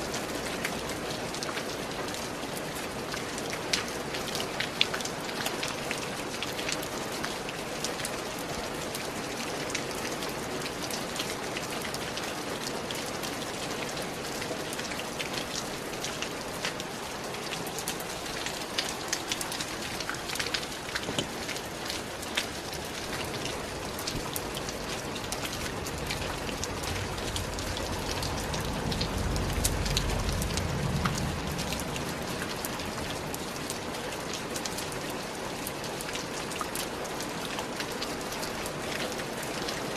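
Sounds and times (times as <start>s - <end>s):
rain drops ticking: 0.0s - 39.9s
low rumble: 25.8s - 32.4s.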